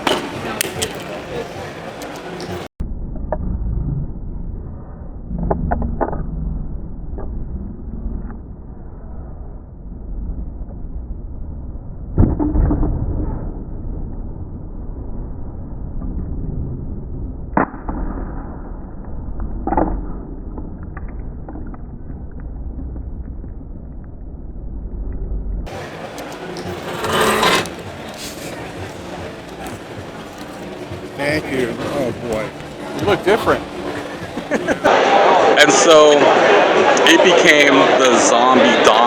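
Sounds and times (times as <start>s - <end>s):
muffled background din: 0.0s - 2.7s, 25.7s - 39.0s.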